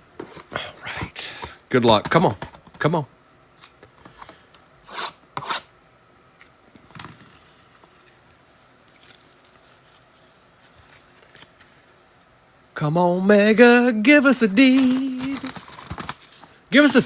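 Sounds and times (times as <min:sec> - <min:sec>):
card packaging tearing: 0:14.2 - 0:16.5.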